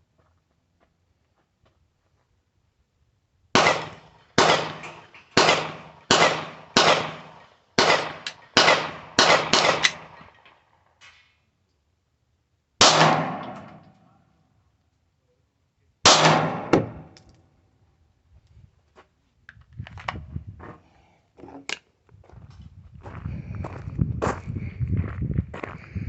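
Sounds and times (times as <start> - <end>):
handgun shots: 3.6 - 10.2, 12.8 - 13.9, 16.1 - 17.2.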